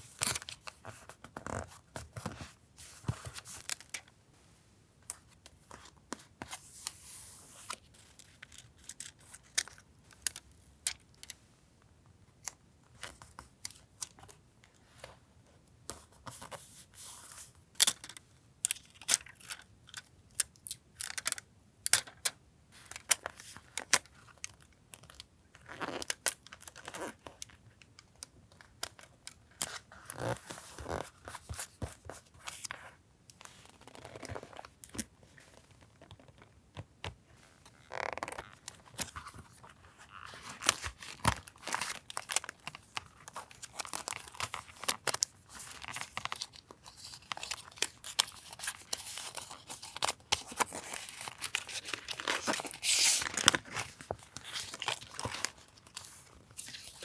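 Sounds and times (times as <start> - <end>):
paper rustling and tearing: 45.5 - 57.0.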